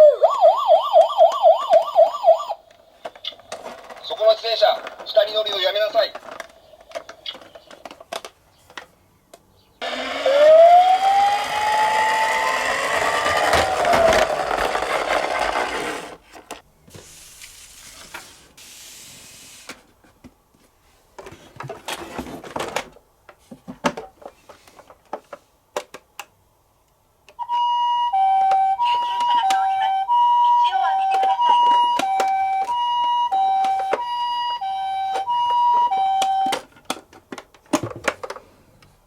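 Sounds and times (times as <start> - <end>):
toy electronic siren wailing: 0.0 - 2.6, 9.8 - 15.1, 27.4 - 36.6
two-tone toy ambulance siren: 0.0 - 2.6, 9.8 - 15.5, 27.4 - 36.6.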